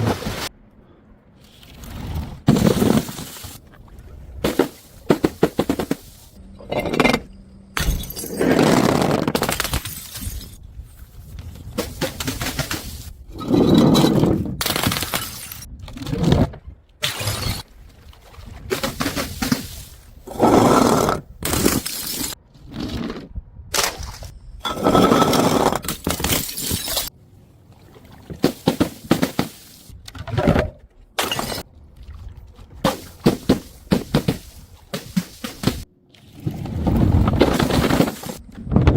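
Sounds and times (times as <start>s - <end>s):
glass bottles shattering: 6.6s - 8.7s, 9.5s - 10.6s, 24.7s - 27.1s, 31.2s - 31.6s.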